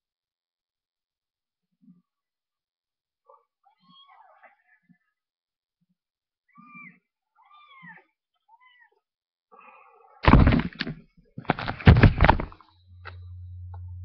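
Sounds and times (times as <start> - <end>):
cat meowing: 3.6 - 5.1, 6.5 - 9.0
loud bumps and rustles: 10.2 - 12.6
low steady hum: 10.3 - 14.0.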